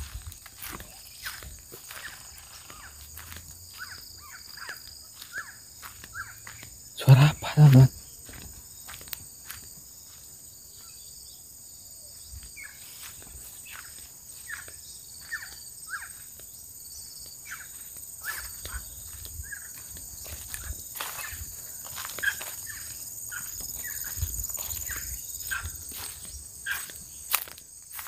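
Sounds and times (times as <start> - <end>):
steady high insect hum: 0.0 - 28.0
high squeaky monkey calls: 14.5 - 16.2.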